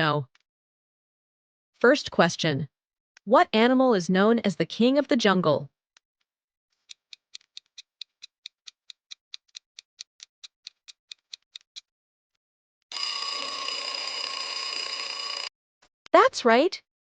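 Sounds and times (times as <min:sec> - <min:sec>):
clock ticking: 0:06.8 - 0:11.8
ringing alarm tone: 0:12.9 - 0:15.5.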